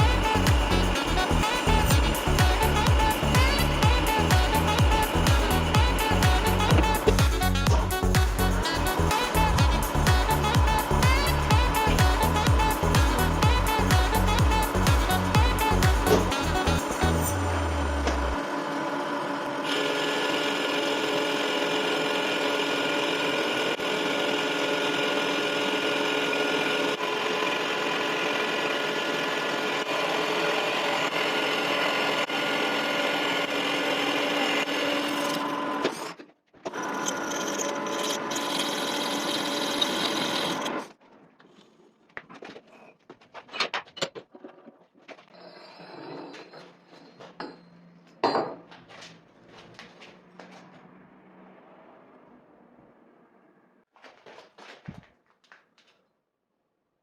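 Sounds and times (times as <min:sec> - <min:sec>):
lathe whining: 0:00.0 - 0:40.9.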